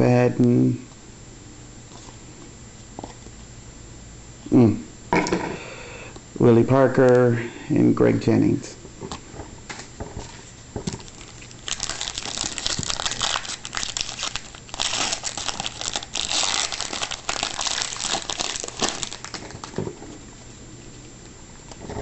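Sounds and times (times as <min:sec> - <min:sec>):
wrapper crinkling and tearing: 0:10.8 - 0:20.2.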